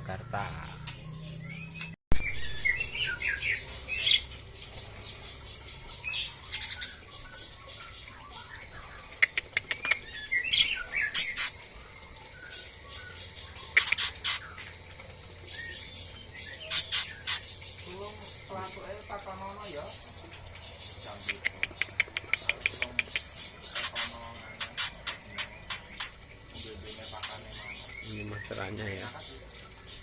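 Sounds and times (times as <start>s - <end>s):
songbirds chirping and calling: 0.0s - 30.0s
sharp clicks: 9.2s - 10.0s, 21.3s - 24.1s.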